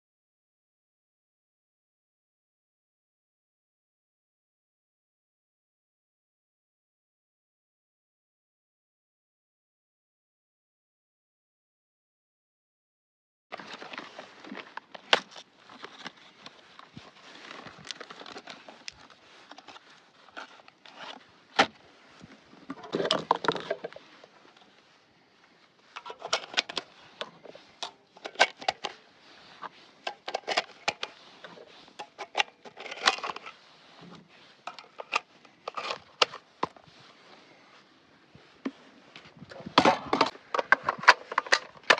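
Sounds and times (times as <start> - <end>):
shotgun handling clicks and scrapes: 13.5 - 24.9, 25.8 - 37.7, 38.5 - 41.9
rattling scrape: 26.0 - 36.4.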